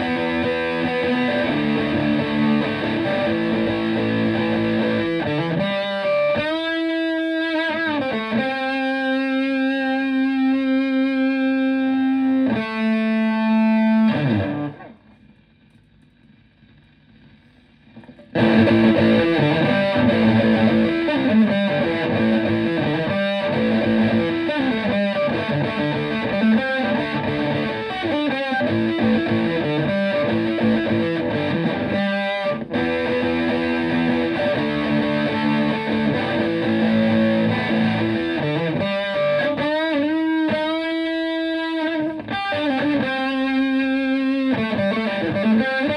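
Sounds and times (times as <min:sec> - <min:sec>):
fuzzed electric guitar: 0:00.0 - 0:45.9.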